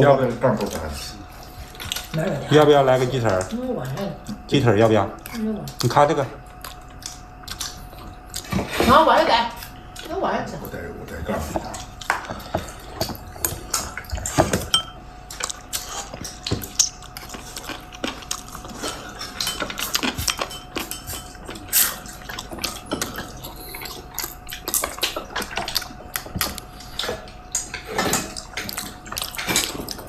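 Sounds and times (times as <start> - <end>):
dishes and cutlery clinking: 11.5 - 15.5, 18.7 - 23.4.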